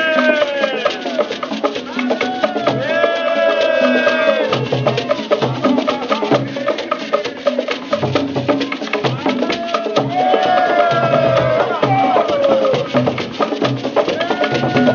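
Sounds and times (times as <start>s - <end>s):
person singing long notes: 0.0s - 7.2s
quick hand percussion: 0.0s - 14.9s.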